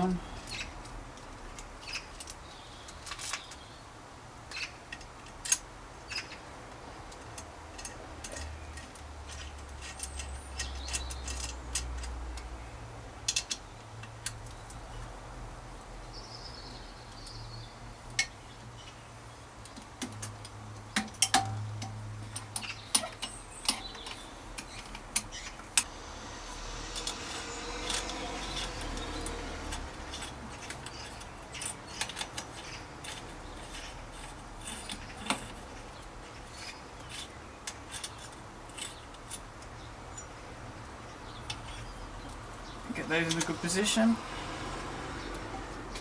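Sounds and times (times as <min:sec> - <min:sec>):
metallic clicks of bicycle parts: 0:04.5 - 0:06.4, 0:07.0 - 0:12.6, 0:13.2 - 0:15.1, 0:19.6 - 0:25.9, 0:26.9 - 0:40.3, 0:41.3 - 0:42.6.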